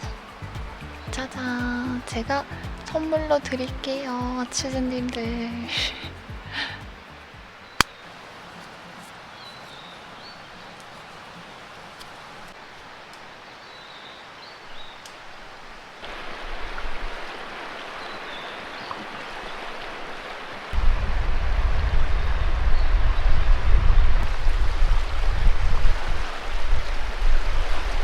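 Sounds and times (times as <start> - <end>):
stream running over rocks: 0.0 - 28.0
wind buffeting microphone: 20.7 - 28.0.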